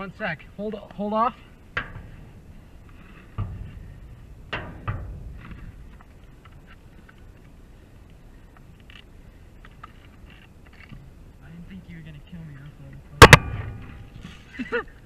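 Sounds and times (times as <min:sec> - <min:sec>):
sharp knocks: 0:13.2 - 0:14.2.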